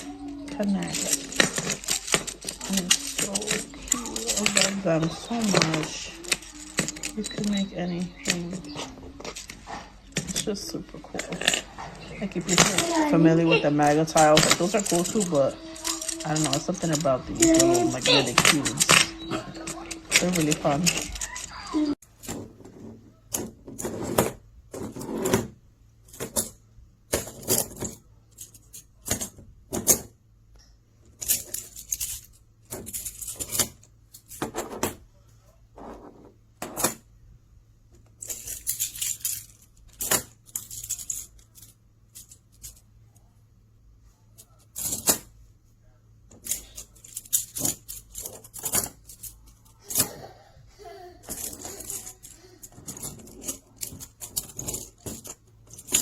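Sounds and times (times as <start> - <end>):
plastic cubes clicking and rattling: 0.0 - 22.6, 31.1 - 35.0, 38.1 - 42.8, 46.3 - 50.3, 51.2 - 56.0.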